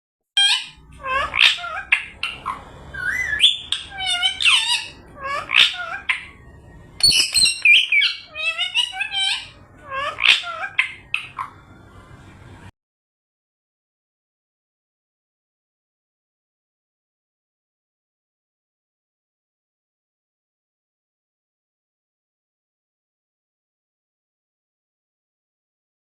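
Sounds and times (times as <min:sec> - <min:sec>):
parrot squawking and whistling: 0:00.4 - 0:11.8.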